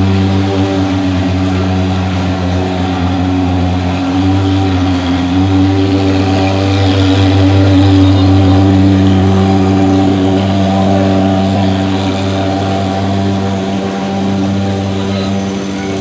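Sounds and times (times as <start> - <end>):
fogging machine engine drone: 0.0 - 16.0.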